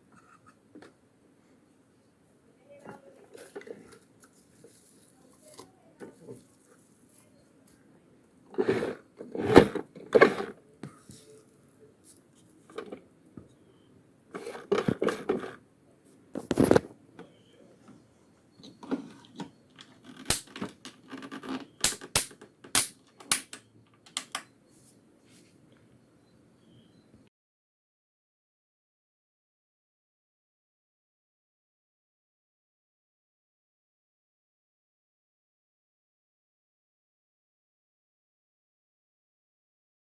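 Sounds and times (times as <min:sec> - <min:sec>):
handling clicks and knocks: 0:18.6 - 0:24.5.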